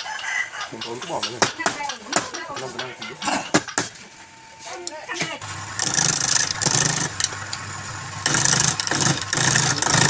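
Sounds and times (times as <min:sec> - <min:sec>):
lathe motor hum: 0:05.4 - 0:10.0
turning tool scraping wood: 0:05.7 - 0:10.0.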